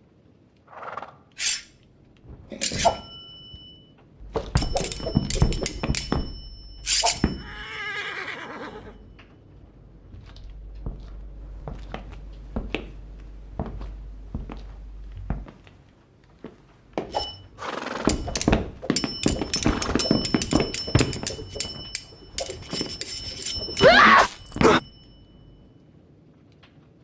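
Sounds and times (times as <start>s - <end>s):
sword blades clashing: 1.4s - 1.7s, 2.6s - 3.6s, 4.4s - 7.6s, 17.1s - 17.4s, 18.1s - 25.1s
sword swish: 1.4s - 1.7s, 2.6s - 3.2s, 6.9s - 7.4s.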